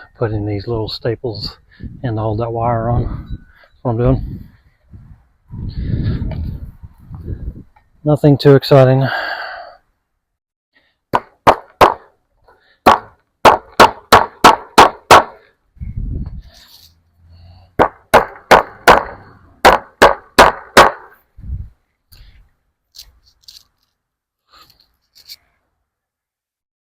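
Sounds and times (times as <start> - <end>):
staples hammered into wood: 11.2 - 12.1, 12.8 - 15.4, 17.8 - 21.1.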